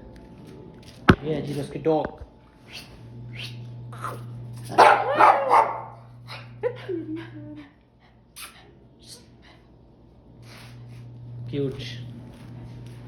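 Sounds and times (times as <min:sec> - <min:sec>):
dog barking: 0:04.7 - 0:06.0.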